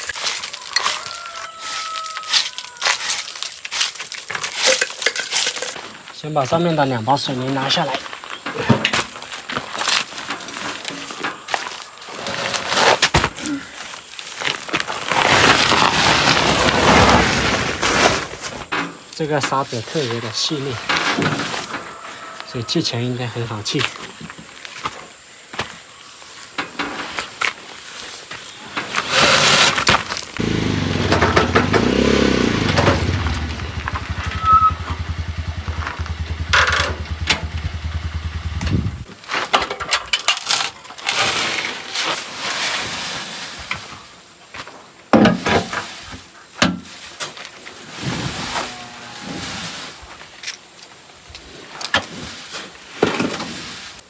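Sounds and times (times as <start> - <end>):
sand scraping and crunching: 0.0 - 4.8, 9.0 - 13.1, 13.7 - 18.7, 26.0 - 38.4, 41.2 - 44.8, 45.6 - 50.4
motor running: 30.4 - 39.0.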